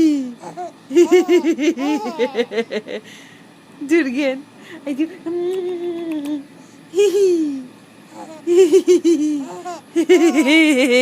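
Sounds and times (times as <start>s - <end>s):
baby laughing and squealing: 8.1s - 10.6s.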